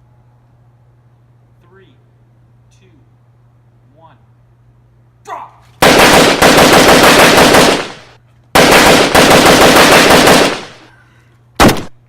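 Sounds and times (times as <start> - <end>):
airsoft rifle firing full auto bursts: 5.8 - 10.9.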